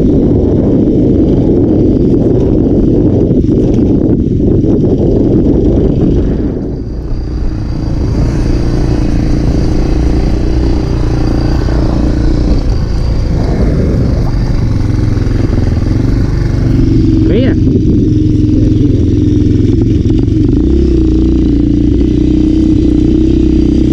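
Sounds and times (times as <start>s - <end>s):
motorcycle engine running: 0.0s - 23.9s.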